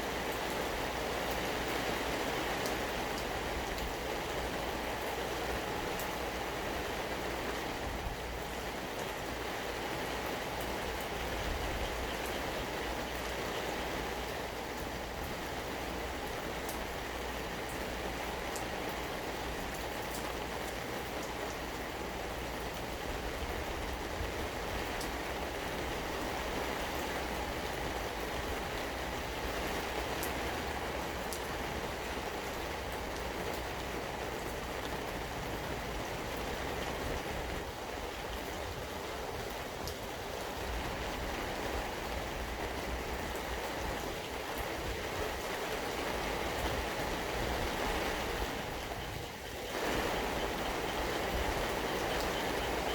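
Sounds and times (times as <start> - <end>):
steady rain falling: 0.0 - 52.9
raindrop ticks: 5.9 - 6.2, 16.6 - 16.8, 17.7 - 21.6, 39.4 - 40.5, 49.0 - 52.9.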